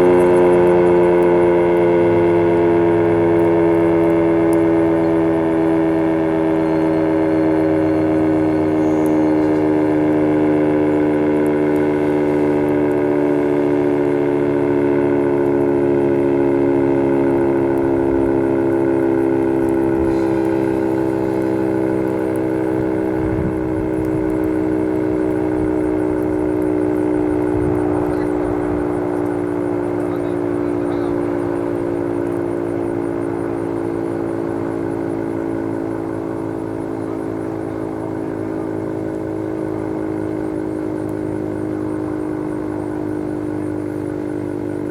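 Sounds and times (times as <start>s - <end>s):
warning siren winding down: 0.0s - 44.9s.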